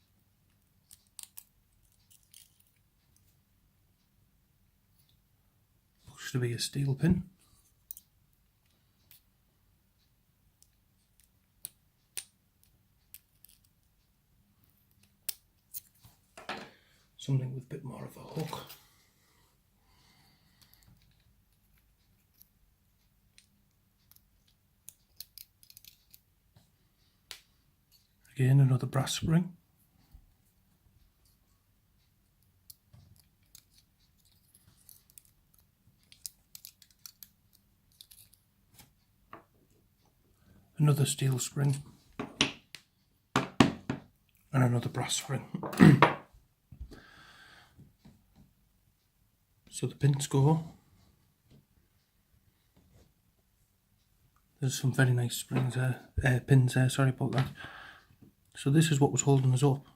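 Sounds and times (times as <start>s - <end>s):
small metal parts clicking: 0.9s - 3.2s, 10.6s - 13.8s, 23.3s - 26.2s, 32.7s - 38.4s
metallic clicks and taps: 23.3s - 26.2s.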